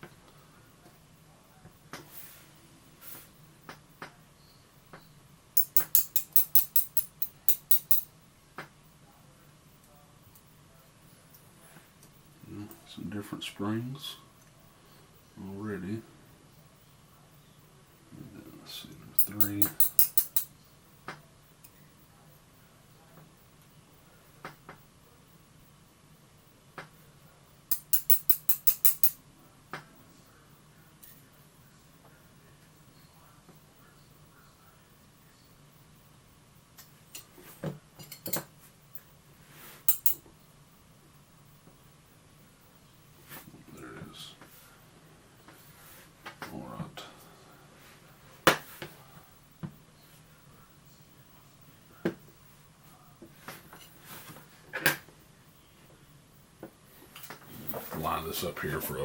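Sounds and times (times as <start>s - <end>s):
small metal lock parts clicking: 5.6s - 8.0s, 19.2s - 20.5s, 27.7s - 29.2s, 39.9s - 40.2s.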